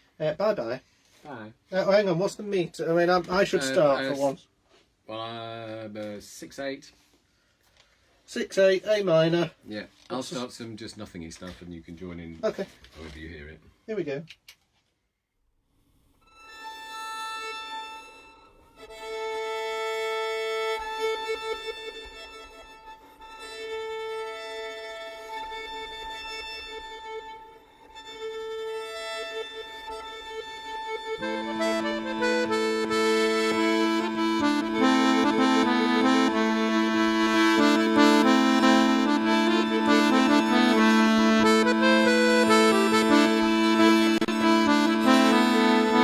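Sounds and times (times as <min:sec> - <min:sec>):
slow instrumental music: 0:16.3 - 0:46.0
accordion melody over bass drone: 0:17.0 - 0:46.0.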